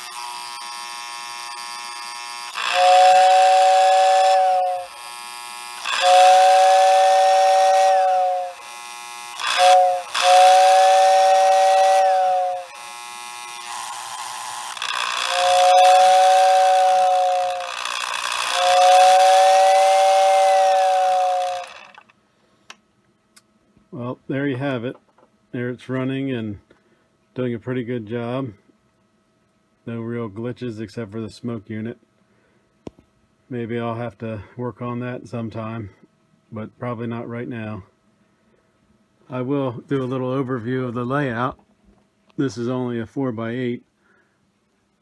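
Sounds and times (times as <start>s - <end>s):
steady buzzing hum: 0.0s - 22.4s
electric two-note whistle blasts: 2.6s - 5.0s, 5.8s - 8.7s, 9.4s - 12.8s, 14.9s - 22.0s.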